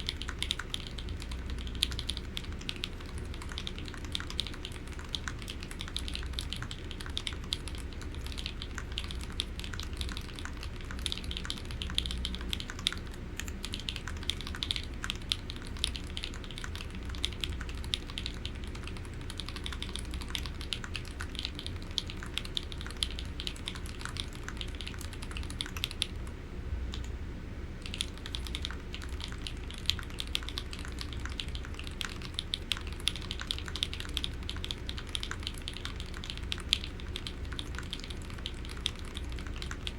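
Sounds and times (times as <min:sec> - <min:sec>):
mechanical keyboard typing: 0:00.0 - 0:26.3, 0:27.8 - 0:39.9.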